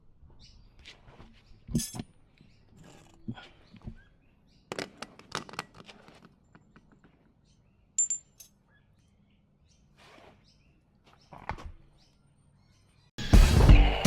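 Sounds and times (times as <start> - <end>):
sharp ringing metal clink: 8.0 - 8.5
metal tools clicking and clinking: 8.0 - 8.6.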